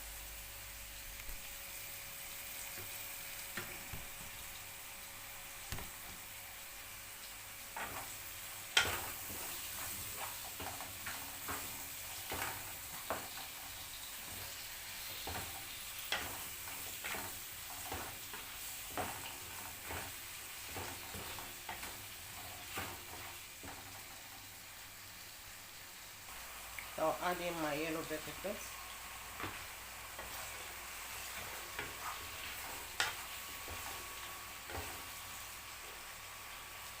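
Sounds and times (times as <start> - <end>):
faint sizzle: 0.0 - 37.0
utensil scraping a frying pan: 7.7 - 24.3, 29.3 - 36.0.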